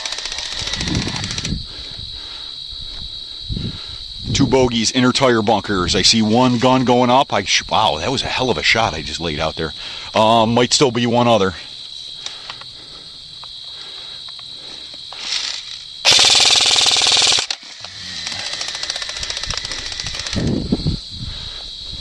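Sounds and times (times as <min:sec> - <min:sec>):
airsoft gun rapid fire: 0:15.4 - 0:17.6, 0:18.3 - 0:20.4.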